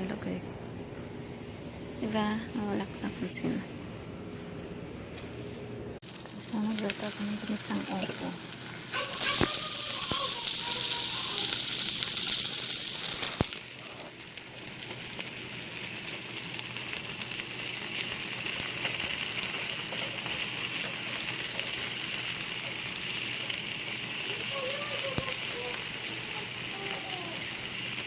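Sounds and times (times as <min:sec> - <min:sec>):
vegetables sizzling in a pan: 0:06.0 - 0:28.0.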